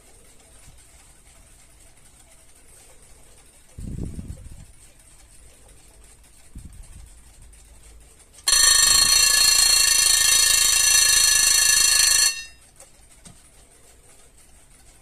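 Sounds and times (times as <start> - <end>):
alarm clock bell ringing: 8.5 - 12.7.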